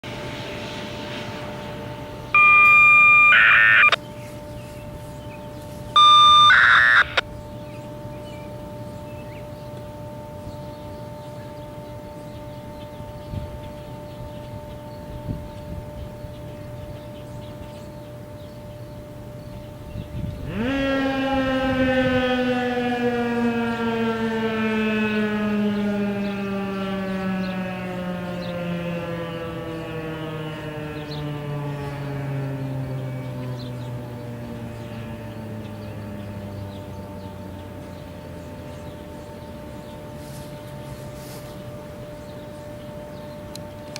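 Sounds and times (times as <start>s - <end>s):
tornado siren winding up and down: 1.9s - 4.0s, 6.0s - 7.3s, 20.4s - 40.1s
radio data tone bursts: 2.4s - 4.0s, 6.0s - 7.2s.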